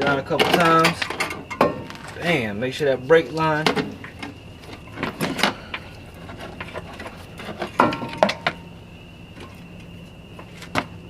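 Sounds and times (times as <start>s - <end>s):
metal tools clinking and knocking: 0.0s - 2.2s, 6.3s - 8.6s
faint steady hum: 0.0s - 11.0s.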